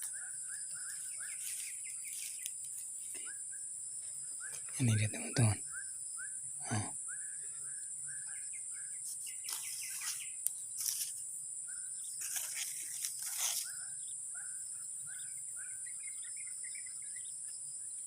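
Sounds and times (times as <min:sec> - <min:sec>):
bird chirping: 0:00.0 - 0:18.0
high-pitched insect drone: 0:00.0 - 0:18.0
rustling scraping noises: 0:01.3 - 0:03.2, 0:09.1 - 0:11.2, 0:12.2 - 0:13.9.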